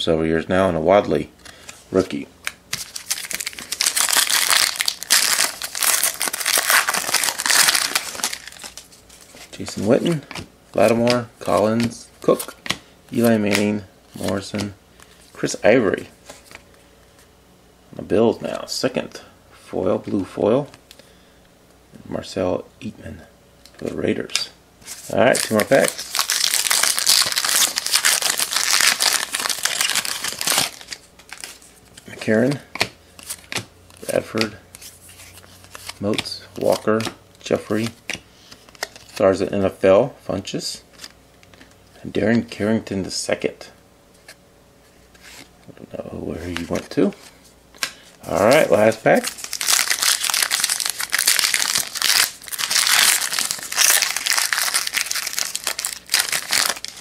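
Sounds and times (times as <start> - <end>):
plastic wrapper crinkling: 2.4 - 10.2, 24.9 - 32.1, 47.8 - 57.0.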